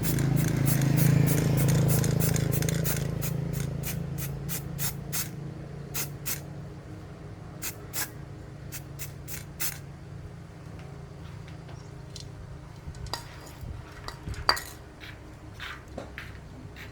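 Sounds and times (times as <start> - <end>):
short sharp spray hisses: 0.0 - 5.4, 6.0 - 6.4, 7.6 - 9.8.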